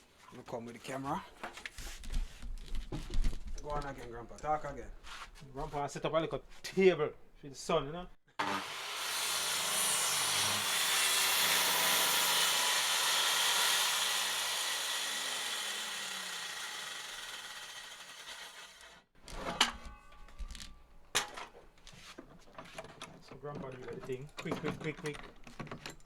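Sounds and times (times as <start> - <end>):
power tool running and winding down: 8.4 - 19.0.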